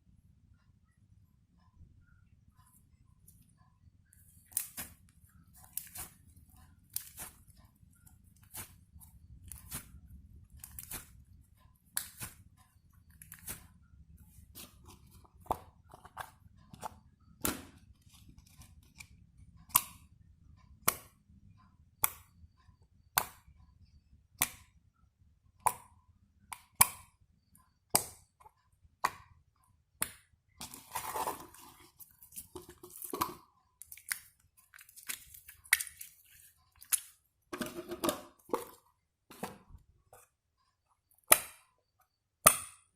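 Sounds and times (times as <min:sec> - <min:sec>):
slime squishing: 0:04.2 - 0:12.5, 0:30.6 - 0:38.7.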